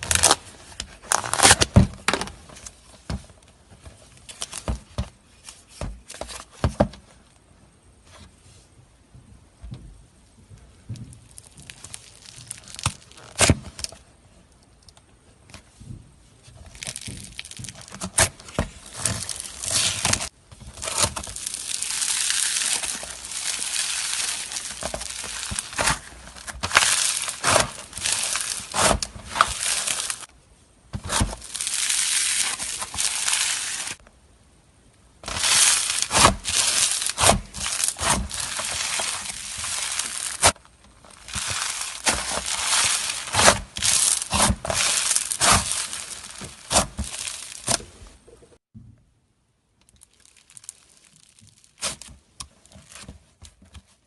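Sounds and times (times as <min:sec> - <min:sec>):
slime crackling and popping: 0:00.0 - 0:00.4, 0:11.2 - 0:13.9, 0:16.6 - 0:30.3, 0:31.0 - 0:34.0, 0:35.2 - 0:47.9, 0:49.8 - 0:53.0.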